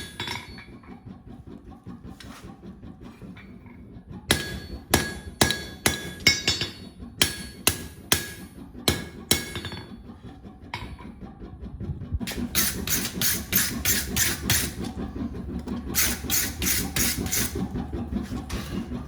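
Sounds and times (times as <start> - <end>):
hammer striking steel on anvil: 4.3 - 9.8.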